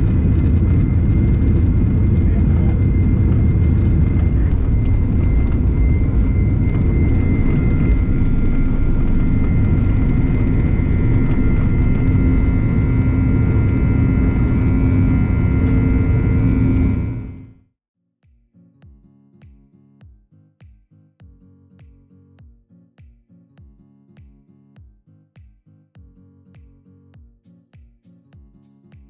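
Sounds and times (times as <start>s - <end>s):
jet engine rumble in cabin: 0.0s - 17.5s
high engine whine: 0.0s - 17.6s.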